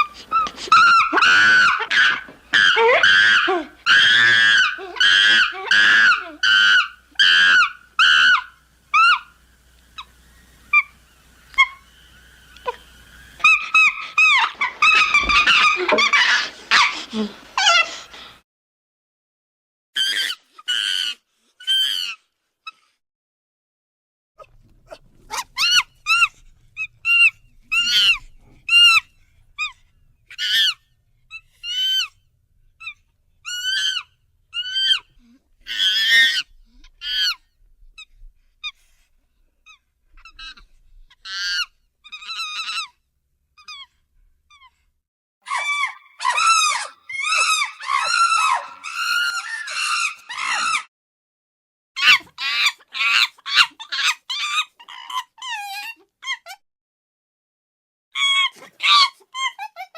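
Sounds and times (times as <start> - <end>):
chimpanzee calls: 0.0 - 9.4, 10.0 - 18.0, 24.4 - 32.1, 32.8 - 37.4, 45.5 - 50.9, 52.0 - 56.6, 58.2 - 59.9.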